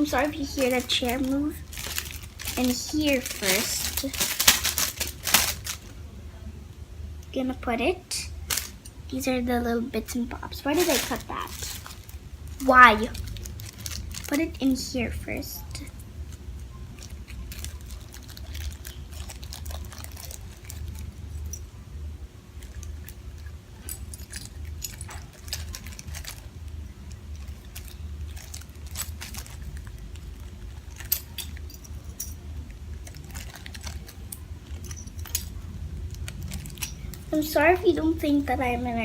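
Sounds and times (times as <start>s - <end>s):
plastic pieces clicking and clinking: 0.0s - 5.8s, 10.7s - 14.4s
steady low hum: 0.0s - 39.0s.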